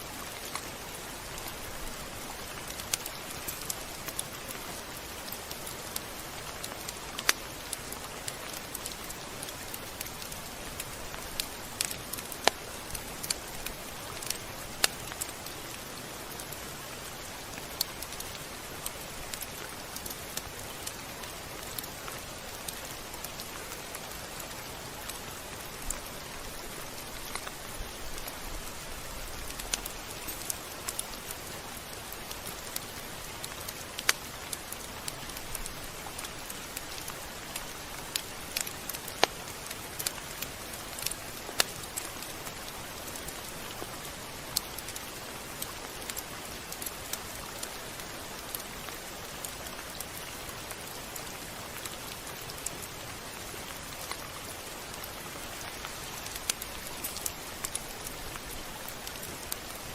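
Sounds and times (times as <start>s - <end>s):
raindrop ticks: 0.0s - 59.9s
steady rain falling: 0.0s - 59.9s.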